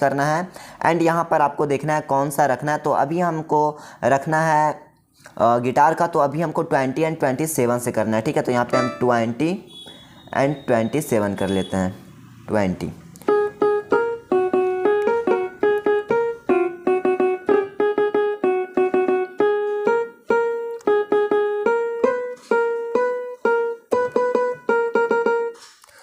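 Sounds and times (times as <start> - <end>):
keyboard plucked guitar melody: 8.7 - 9.3, 13.2 - 25.6.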